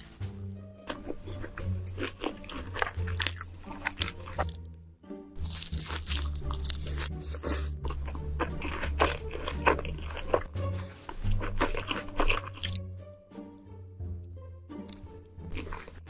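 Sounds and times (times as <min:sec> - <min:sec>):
background music with bass line: 0:00.0 - 0:16.0
crunching and chewing crisp food: 0:00.9 - 0:04.7, 0:05.4 - 0:12.8, 0:14.8 - 0:16.0.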